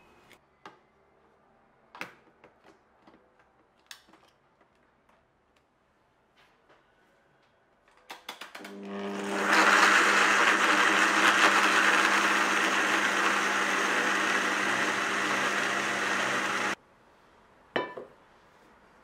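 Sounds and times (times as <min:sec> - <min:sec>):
kitchen appliance motor running: 0:08.7 - 0:16.8.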